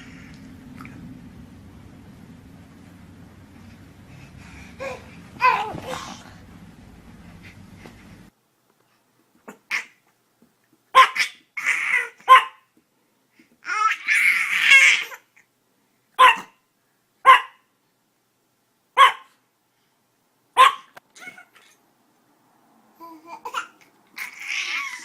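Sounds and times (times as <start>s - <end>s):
dog barking sharply: 12.3s - 12.6s, 16.2s - 16.6s, 17.2s - 17.6s, 19.0s - 19.3s, 20.6s - 21.0s.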